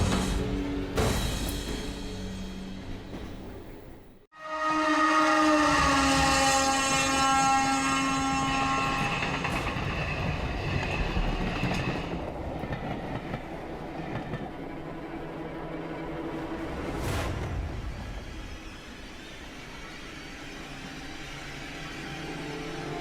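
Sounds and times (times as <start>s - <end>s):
train horn: 4.3s - 10.0s
moving train rumble: 5.0s - 23.0s.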